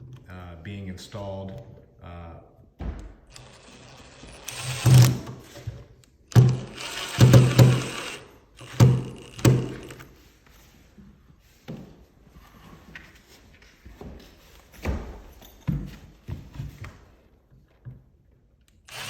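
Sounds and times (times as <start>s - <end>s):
power drill driving screws: 3.3s - 5.7s, 6.3s - 10.1s.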